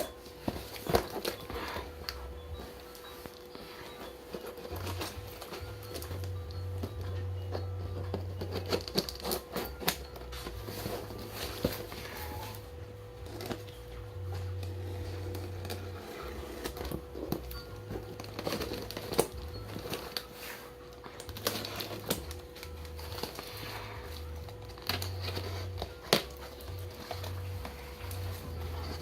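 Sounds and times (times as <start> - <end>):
packaging crinkling: 13.3 - 29.0.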